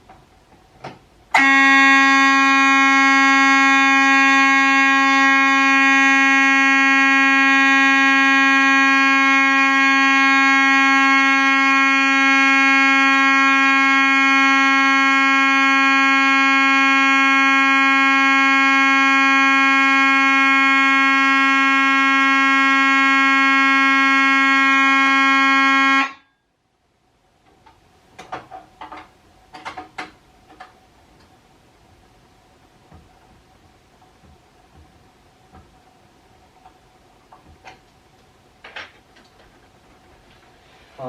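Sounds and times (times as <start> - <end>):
fire alarm horn buzzing: 1.3 - 26.5
faint knocks and clicks: 27.4 - 31.4.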